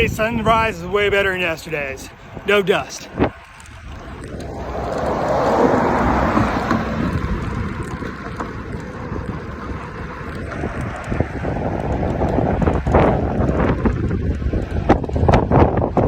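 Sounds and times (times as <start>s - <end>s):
wind buffeting microphone: 0.0s - 16.0s
ocean surf rushing: 4.2s - 7.3s.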